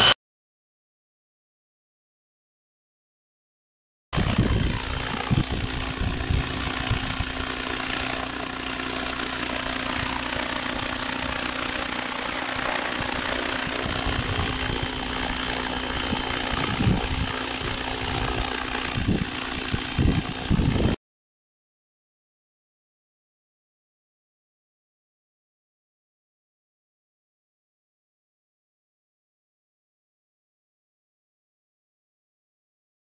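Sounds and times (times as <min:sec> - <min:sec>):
wind buffeting microphone: 0:04.2 - 0:08.2, 0:12.6 - 0:21.0
model helicopter whine and hum: 0:04.2 - 0:21.0.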